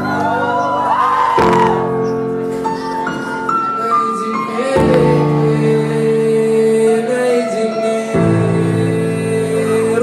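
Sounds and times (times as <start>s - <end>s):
crowd shouting: 0.0s - 3.9s
keyboard chords over loudspeakers: 0.0s - 10.0s.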